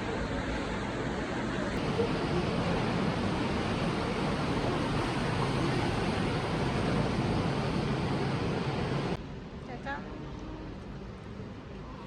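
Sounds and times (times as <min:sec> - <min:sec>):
steady rushing noise: 0:01.8 - 0:09.5.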